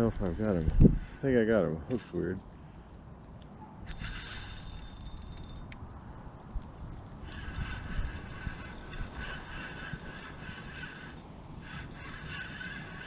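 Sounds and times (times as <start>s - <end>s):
fast high clicking: 1.9s - 2.3s, 3.9s - 5.8s, 7.2s - 13.0s.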